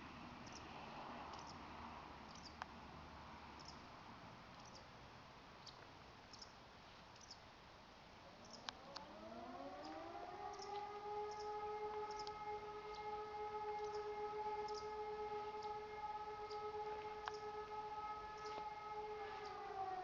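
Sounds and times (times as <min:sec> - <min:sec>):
siren rising to steady tone: 0:08.2 - 0:20.0
sharp clicks: 0:08.5 - 0:09.1, 0:09.8 - 0:13.1.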